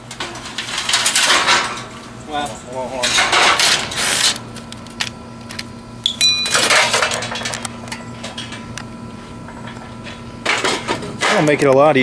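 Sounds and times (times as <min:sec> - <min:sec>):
metal parts scraping and rattling: 0:00.1 - 0:04.4, 0:06.4 - 0:08.7.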